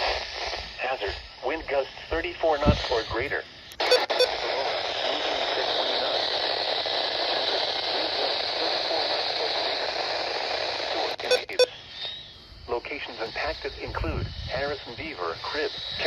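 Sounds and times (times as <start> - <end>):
radio static hiss: 0.0 - 11.7
sharp clicks: 3.7 - 4.3.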